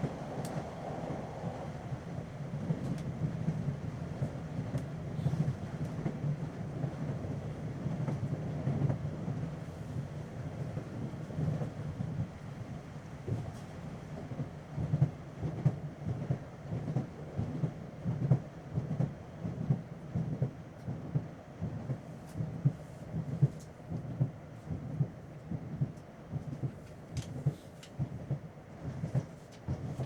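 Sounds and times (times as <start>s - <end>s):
train interior rumble: 0.0s - 30.0s
train running gear knocks: 26.0s - 28.4s.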